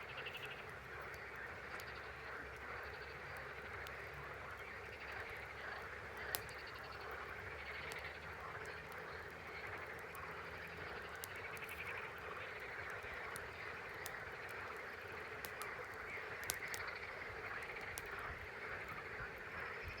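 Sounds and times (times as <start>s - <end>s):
campfire crackling: 0.0s - 20.0s
sharp fire cracks: 5.7s - 18.3s.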